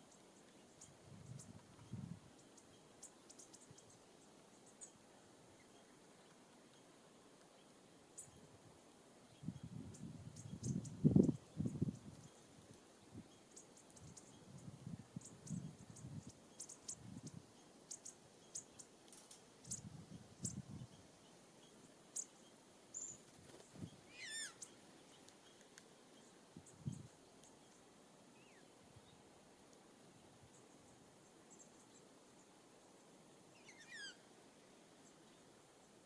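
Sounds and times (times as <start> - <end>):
high bird chirps: 24.1 - 24.8, 33.6 - 34.2.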